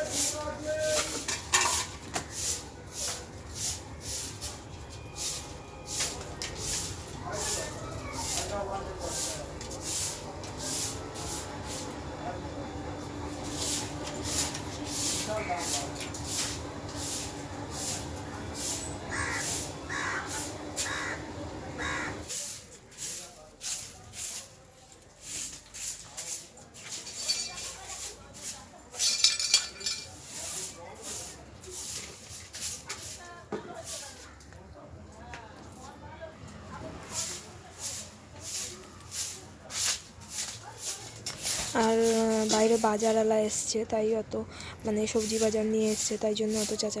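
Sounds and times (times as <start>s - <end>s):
broom sweeping concrete floor: 0.0s - 21.2s, 21.8s - 34.7s, 36.7s - 43.8s, 44.8s - 47.0s
crows cawing: 19.1s - 22.3s.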